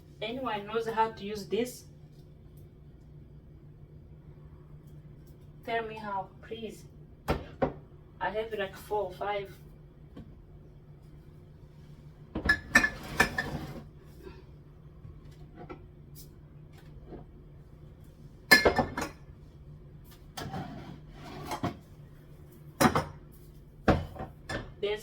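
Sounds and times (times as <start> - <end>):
kitchen items knocking and clinking: 18.5 - 19.2.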